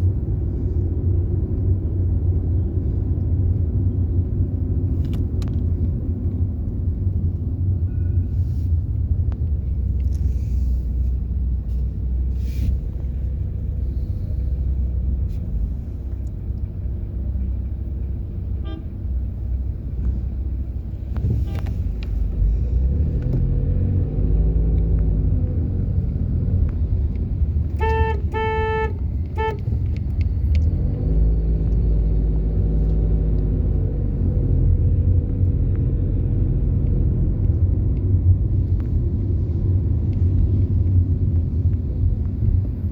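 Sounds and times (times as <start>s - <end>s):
car engine and road rumble: 0.0s - 42.9s
car horn short toots: 18.6s - 19.0s, 27.7s - 29.8s.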